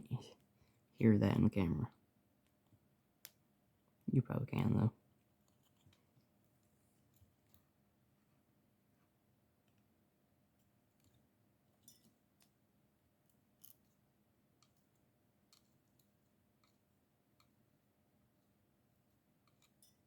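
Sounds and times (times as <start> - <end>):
faint clicks of small parts: 1.9 - 3.4, 5.2 - 7.8, 10.5 - 20.0.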